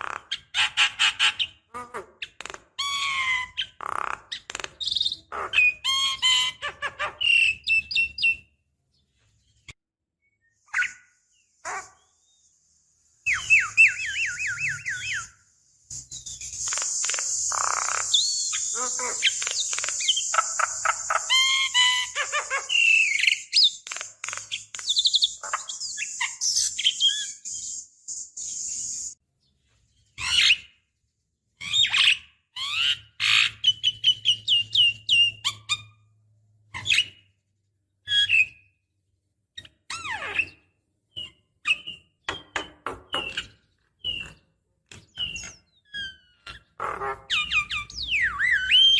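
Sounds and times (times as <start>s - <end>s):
bird singing whistled notes: 10.2s - 29.2s, 40.4s - 44.4s, 47.4s - 48.9s
bird chatter: 13.3s - 29.2s
harsh rasping bird call: 16.6s - 23.5s, 46.3s - 48.9s.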